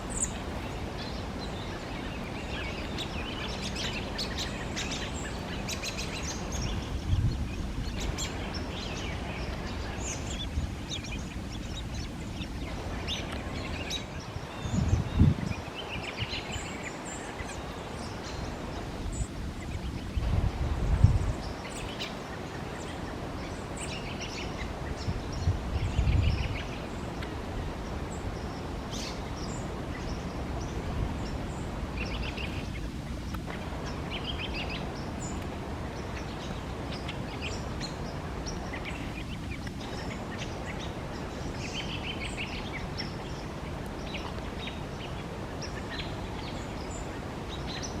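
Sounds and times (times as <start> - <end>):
nuthatch calling: 0.0 - 18.5.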